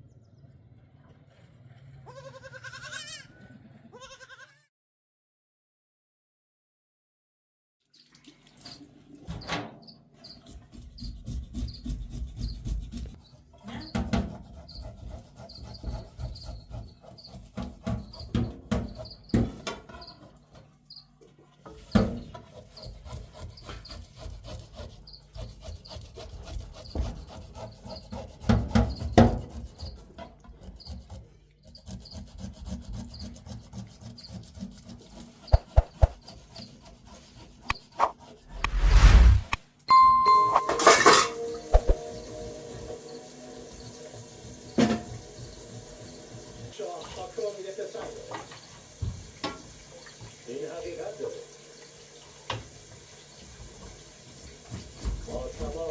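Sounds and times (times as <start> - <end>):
rough scraping and rubbing: 35.1 - 36.4, 37.1 - 39.6
short high chirp: 38.5 - 42.0.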